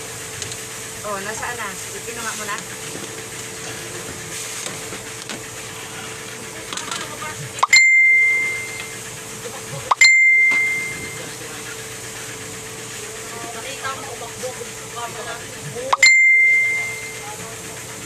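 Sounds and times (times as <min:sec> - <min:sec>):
bright bell-like dings: 0:07.6 - 0:09.0, 0:09.9 - 0:11.3, 0:16.0 - 0:17.4.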